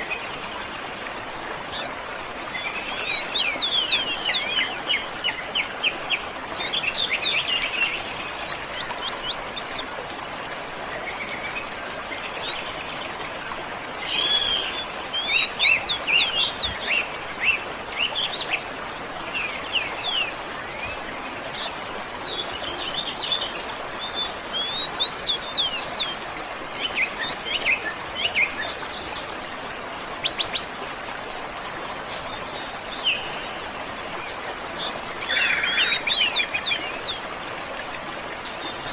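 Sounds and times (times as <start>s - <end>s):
waterfall rushing: 0.0s - 38.9s
birds chirping and trilling: 1.6s - 9.8s, 11.1s - 12.8s, 14.0s - 26.2s, 26.8s - 29.2s, 34.7s - 37.2s.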